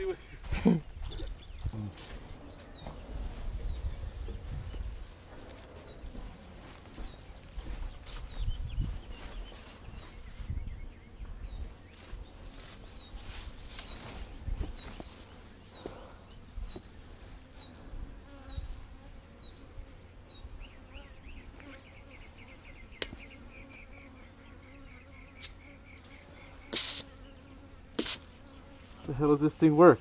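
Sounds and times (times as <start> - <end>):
bees buzzing: 8.9 - 29.9
high chirps: 26.7 - 27.2.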